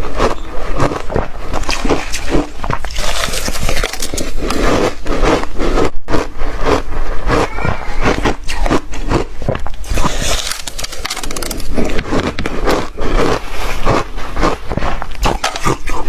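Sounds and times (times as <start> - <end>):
ice being chewed: 0.0 - 16.0.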